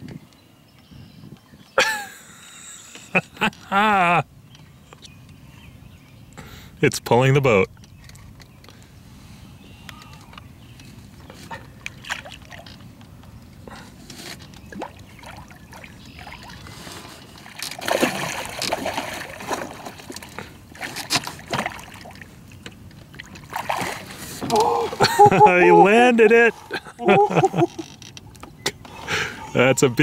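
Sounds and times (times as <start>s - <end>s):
water splashing beside boat: 10.2s - 29.1s.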